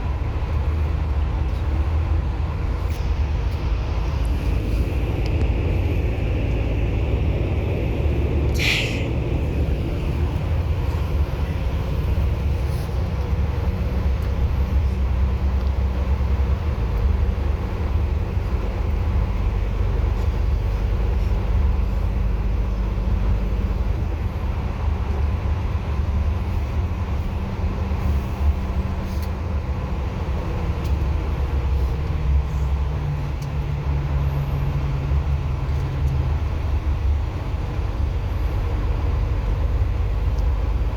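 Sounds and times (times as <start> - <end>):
bus engine drone: 0.0 - 40.9
road noise: 0.0 - 40.9
high-pitched hiss or squeal: 8.6 - 9.1.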